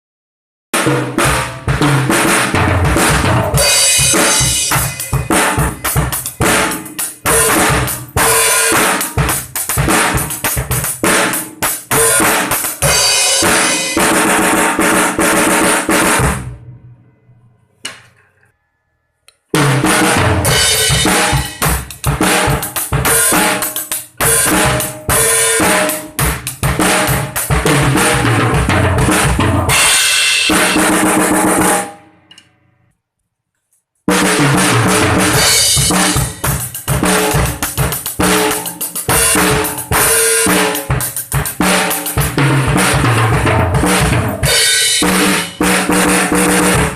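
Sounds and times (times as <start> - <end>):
snare drum played fast: 0.8 - 16.4, 19.6 - 31.9, 34.1 - 46.9
bass drum: 1.2 - 6.7
cymbals: 1.2 - 16.5, 19.6 - 32.0, 34.6 - 46.9.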